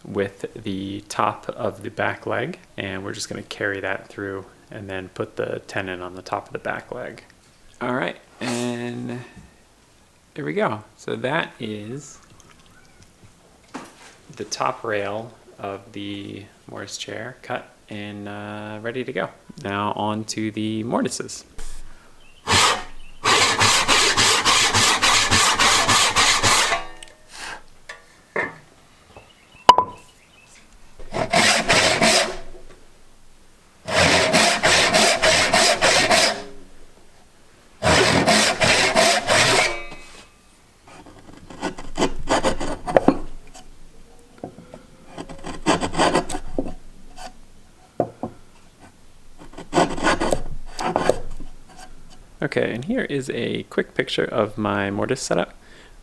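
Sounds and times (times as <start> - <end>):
hand tool rasping wood: 21.6 - 27.7, 31.0 - 32.7, 33.9 - 36.7, 37.8 - 40.3, 40.9 - 43.7, 44.8 - 47.4, 48.8 - 52.3.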